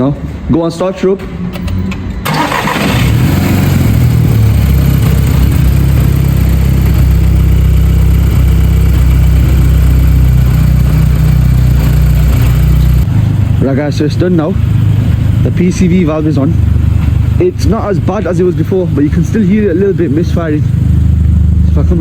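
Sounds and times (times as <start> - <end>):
car engine starting and idling: 1.4 - 22.0.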